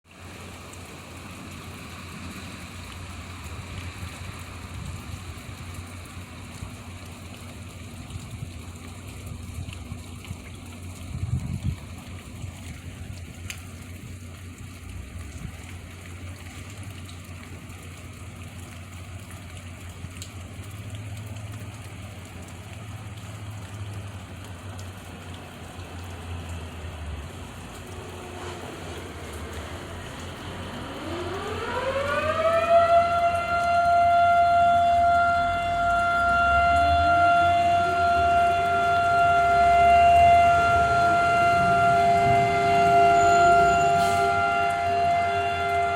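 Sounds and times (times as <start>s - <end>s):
steady rain: 0.0s - 45.9s
tornado siren wailing: 0.3s - 45.9s
lower second siren: 27.4s - 45.9s.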